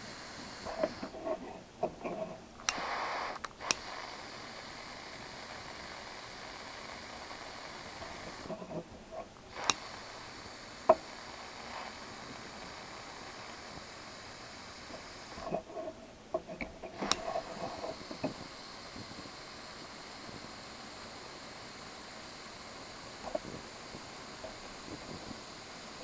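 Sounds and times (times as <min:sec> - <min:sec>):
torch hissing: 0:00.0 - 0:26.0
sharp clicks and knocks: 0:16.3 - 0:18.4.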